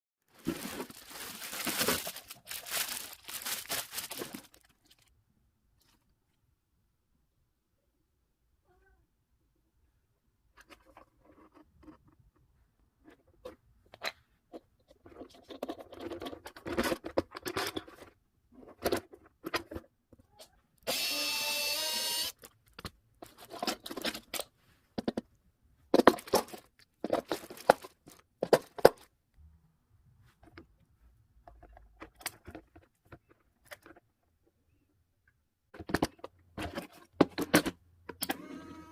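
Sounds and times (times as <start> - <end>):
crunching scraping and clattering: 0.3 - 5.1, 22.4 - 25.2, 25.9 - 29.0.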